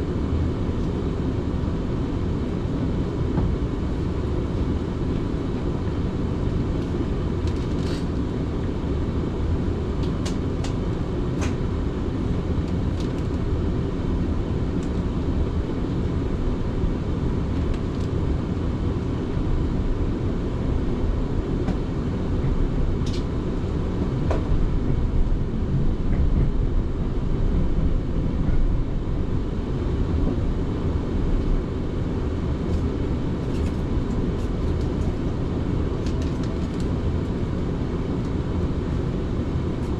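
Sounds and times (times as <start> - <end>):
train wheels rumbling: 21.7 - 30.6.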